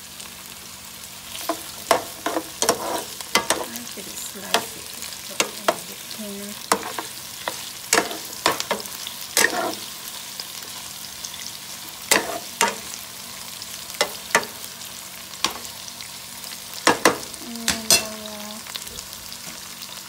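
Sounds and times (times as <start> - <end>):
food sizzling in a frying pan: 0.0 - 20.0
sharp knocks in pan: 16.8 - 18.1.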